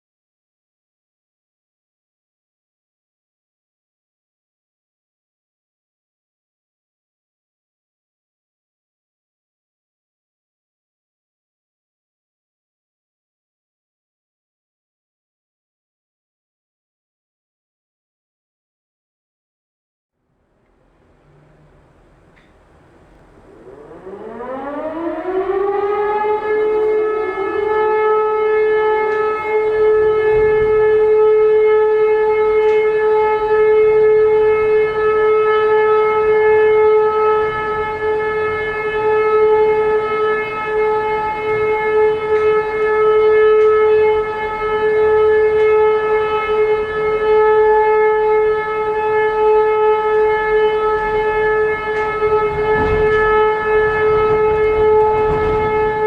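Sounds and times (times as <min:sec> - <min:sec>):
civil defence siren winding up: 0:20.4 - 0:56.0.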